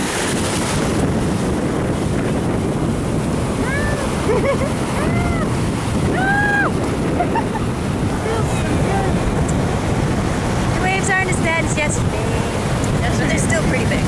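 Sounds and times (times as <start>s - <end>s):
ocean surf breaking: 0.0s - 14.0s
wind on microphone: 0.0s - 14.0s.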